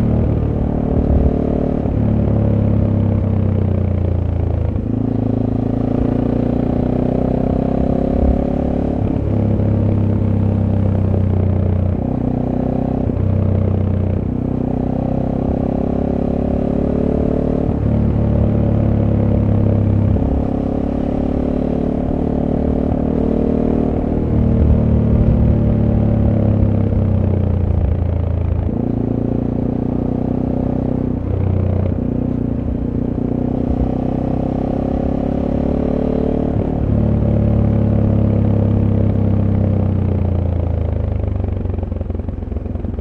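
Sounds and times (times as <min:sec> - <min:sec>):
motorcycle engine revving: 0:00.0 - 0:43.0.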